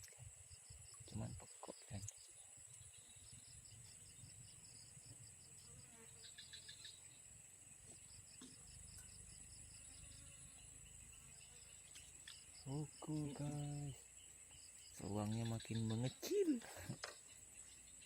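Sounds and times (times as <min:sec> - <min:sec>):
cricket chirps: 0:00.0 - 0:18.0
high-pitched insect drone: 0:00.1 - 0:18.0.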